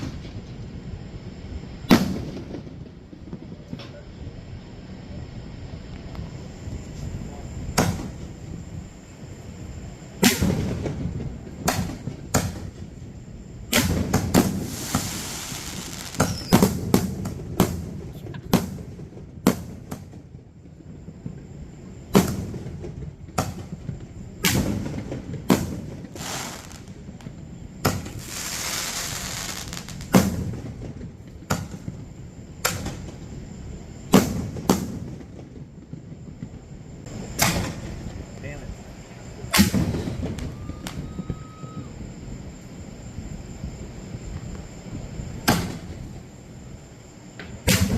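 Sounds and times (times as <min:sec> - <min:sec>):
firework shells booming: 0:00.0 - 0:00.6, 0:01.8 - 0:03.9, 0:07.2 - 0:08.8, 0:10.1 - 0:20.4, 0:22.0 - 0:33.3, 0:34.0 - 0:36.5, 0:37.1 - 0:38.4, 0:39.3 - 0:41.9, 0:45.3 - 0:46.2, 0:47.4 - 0:47.9
hissing crackle of fireworks: 0:00.0 - 0:47.9.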